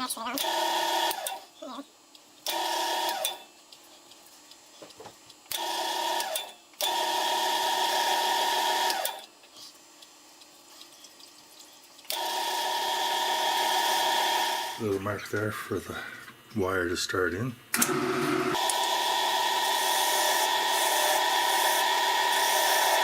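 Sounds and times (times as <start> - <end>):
wood lathe whine: 5.6 - 9.2, 12.1 - 14.8, 17.8 - 23.0.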